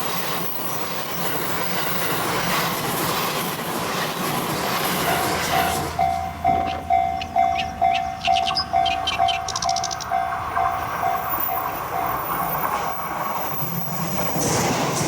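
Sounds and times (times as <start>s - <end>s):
train passing at speed: 0.0s - 15.0s
level-crossing alarm ringing: 5.0s - 13.2s.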